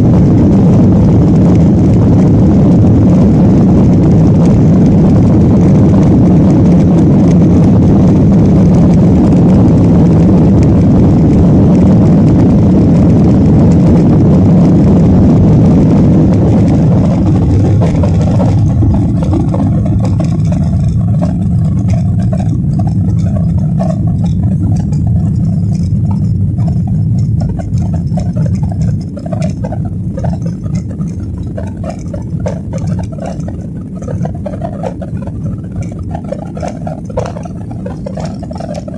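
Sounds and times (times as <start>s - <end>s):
jet engine rumble in cabin: 0.0s - 38.9s
light rattles: 14.8s - 38.9s.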